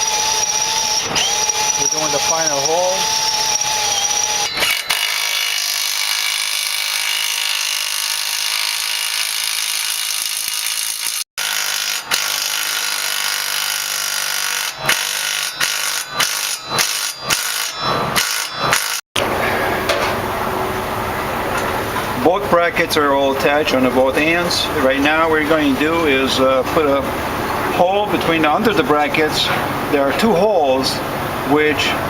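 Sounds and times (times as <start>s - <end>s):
power drill boring through metal: 0.0s - 19.0s.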